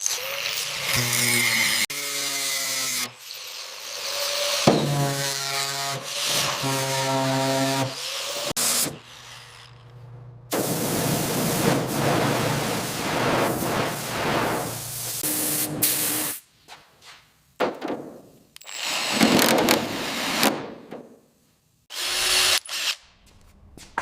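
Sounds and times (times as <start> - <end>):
workshop noise: 0.0 - 21.3
compressed air hissing: 10.5 - 16.5.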